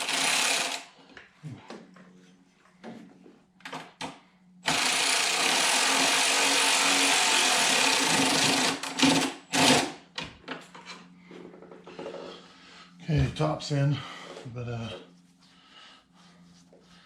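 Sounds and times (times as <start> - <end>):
impact driver running: 0.0 - 0.9, 4.6 - 10.0.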